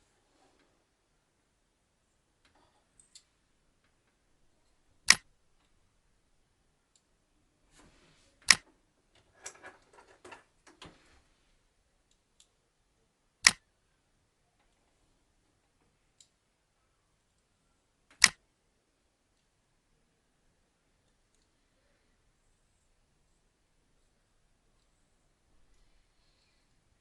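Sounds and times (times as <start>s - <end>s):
loud sharp clicks: 5.0s - 5.3s, 13.4s - 13.6s, 18.1s - 18.4s
small clicks and rattling: 8.5s - 11.0s.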